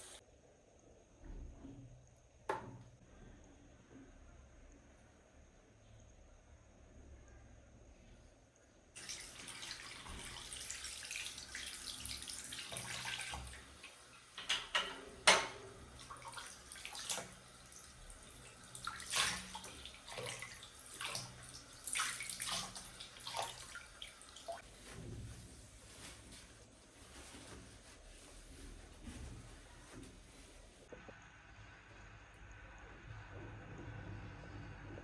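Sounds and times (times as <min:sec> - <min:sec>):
water running from a tap: 0:09.0 - 0:24.6.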